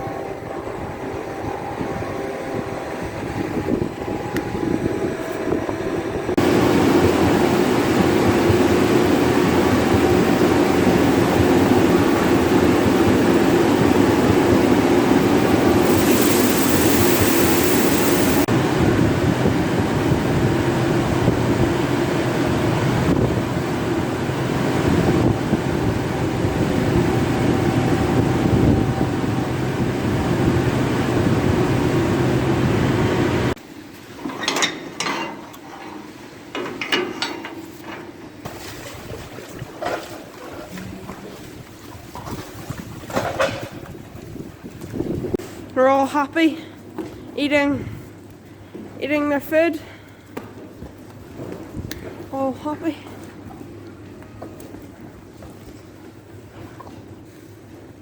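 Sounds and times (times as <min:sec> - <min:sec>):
tractor engine running: 0:00.0 - 0:33.6.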